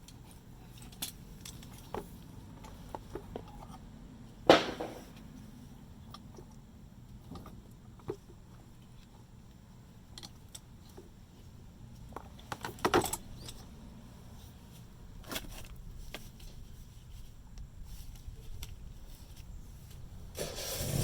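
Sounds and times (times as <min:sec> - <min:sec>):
knock: 0:04.5 - 0:05.0.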